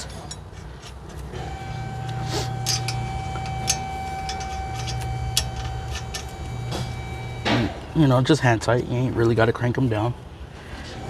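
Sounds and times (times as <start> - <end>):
steady hum: 0.0 - 9.2
high-pitched tone: 1.4 - 7.8
metal clinks and taps: 2.0 - 7.0.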